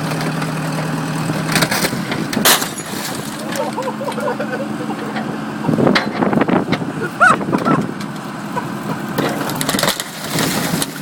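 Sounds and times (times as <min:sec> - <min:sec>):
car body crushing metal crunches: 0:01.5 - 0:03.9, 0:09.2 - 0:11.0.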